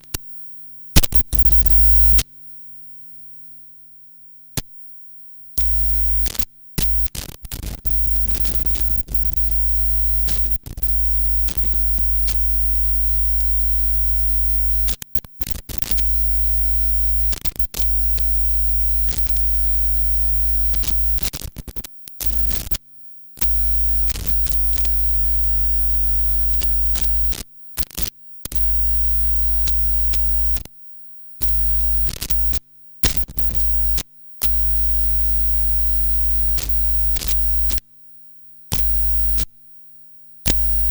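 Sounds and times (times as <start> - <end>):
mains hum and buzz: 0.0 - 40.9
cable crackles and pops: 1.0 - 2.2, 5.6 - 22.8, 31.4 - 34.6, 40.5 - 40.9.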